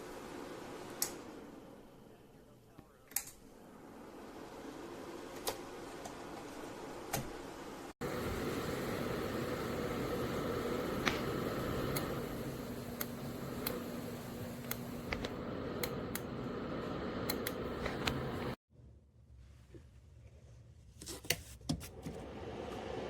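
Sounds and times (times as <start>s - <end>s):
space heater fan humming: 8.0s - 18.6s
light clicks: 14.6s - 16.3s.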